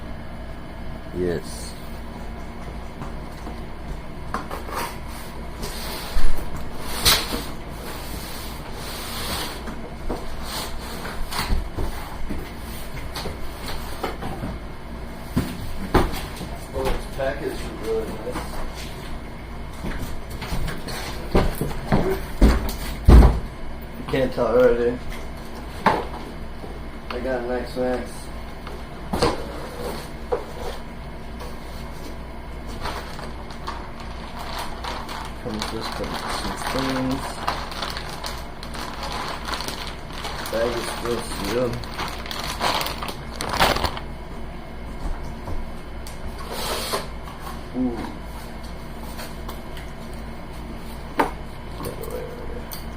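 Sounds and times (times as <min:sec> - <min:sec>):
packaging rustling: 0:32.7 - 0:44.1
packaging thump: 0:35.5 - 0:44.0.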